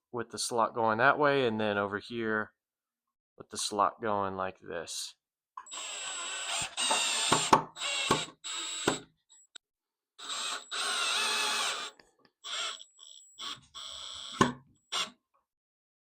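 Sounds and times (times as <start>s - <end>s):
power drill driving screws: 5.7s - 9.0s, 10.2s - 15.1s.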